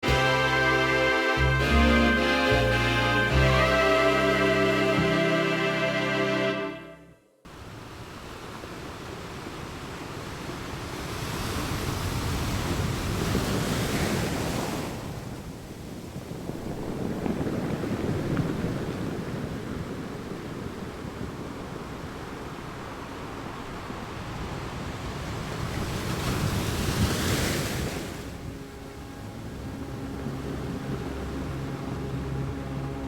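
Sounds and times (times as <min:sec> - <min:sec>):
sea waves breaking against rocks: 0:08.5 - 0:28.4
wind buffeting the microphone: 0:09.0 - 0:33.0.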